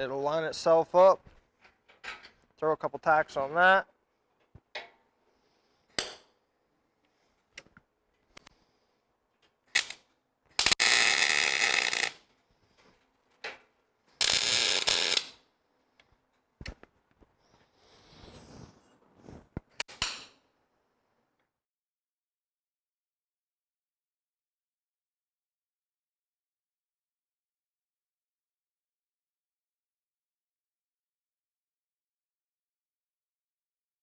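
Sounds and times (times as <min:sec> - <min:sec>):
welding bursts: 0:09.8 - 0:10.0, 0:10.6 - 0:12.2, 0:14.2 - 0:15.4.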